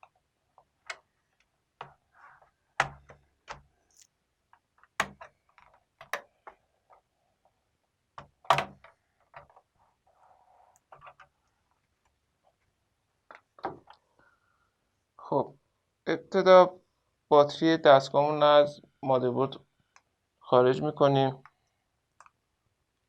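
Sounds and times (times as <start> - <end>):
plastic clicks and snaps: 2.8 - 6.6.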